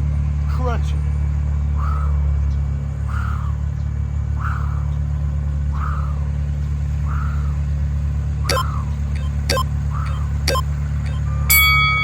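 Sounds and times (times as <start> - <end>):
low engine-like hum: 0.0 - 12.0
sharp electronic beep: 8.5 - 12.0
soft rhythmic breaths: 8.5 - 12.0.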